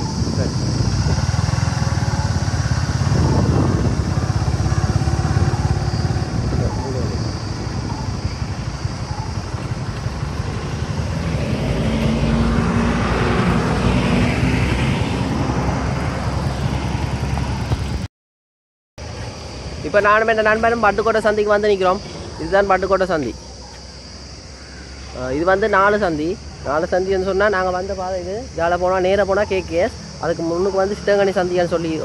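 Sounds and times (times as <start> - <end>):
motorcycle engine running: 0.0 - 18.1.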